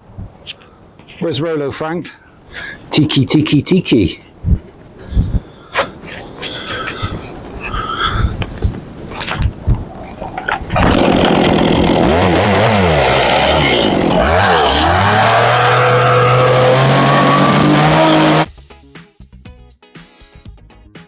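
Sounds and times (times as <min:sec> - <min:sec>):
chainsaw running: 0:10.8 - 0:18.5.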